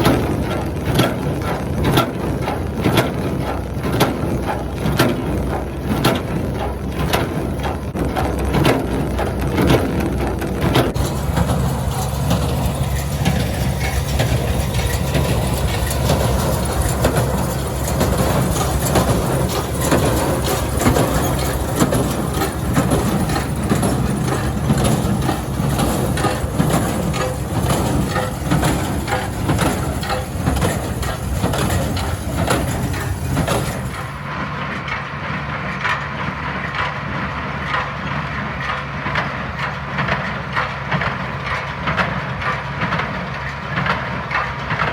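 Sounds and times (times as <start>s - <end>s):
baler clattering knocks: 0.0s - 34.3s
tractor engine under load: 0.0s - 44.9s.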